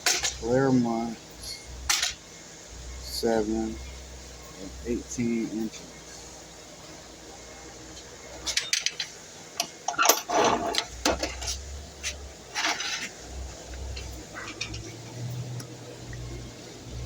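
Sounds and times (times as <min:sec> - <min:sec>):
material scraping: 0:10.3 - 0:15.0.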